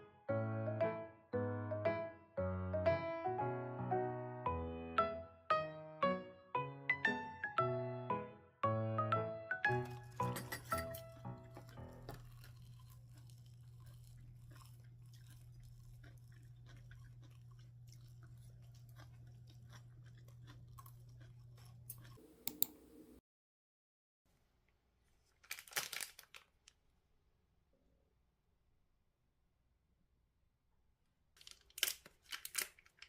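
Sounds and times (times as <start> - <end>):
crunchy chewing: 9.8 - 23.2
small clicks: 22.2 - 23.2.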